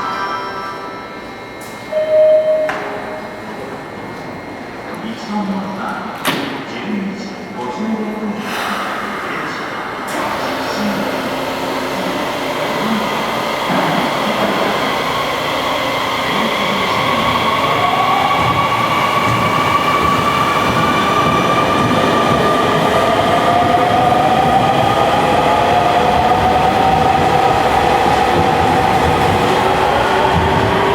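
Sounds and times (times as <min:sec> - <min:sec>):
train running noise: 0:08.4 - 0:30.9.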